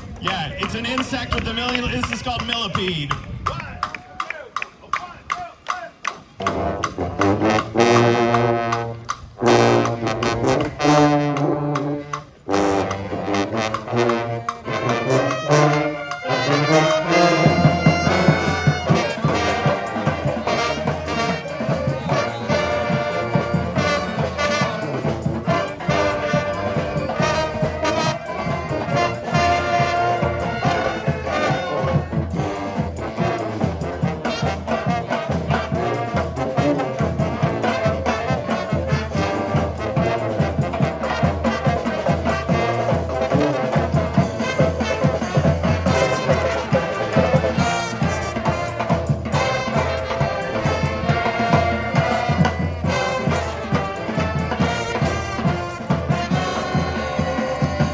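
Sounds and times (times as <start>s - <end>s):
brass band playing: 0.0s - 57.9s
drums beating: 0.0s - 57.9s.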